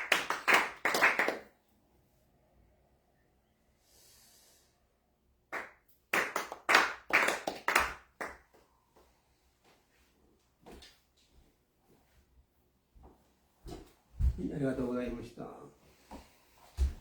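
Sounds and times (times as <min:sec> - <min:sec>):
people clapping hands: 0:00.0 - 0:01.5, 0:05.5 - 0:08.6.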